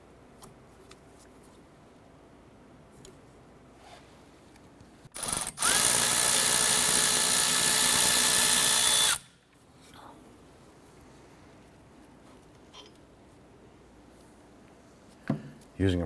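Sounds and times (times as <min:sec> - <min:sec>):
power tool motor running: 0:05.2 - 0:09.3.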